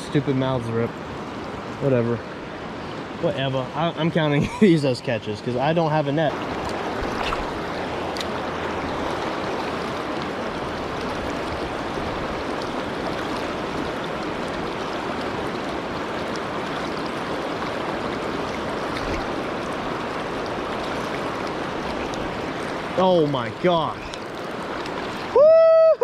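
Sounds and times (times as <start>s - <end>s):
river flowing over rocks: 5.3s - 25.9s.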